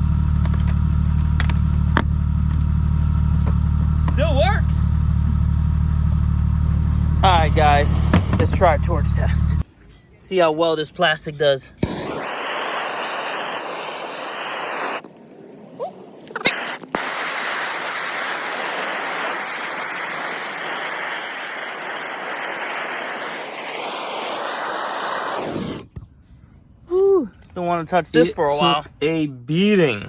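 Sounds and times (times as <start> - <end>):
gas torch flame hissing: 7.2 - 9.0, 11.8 - 15.1, 16.3 - 25.9.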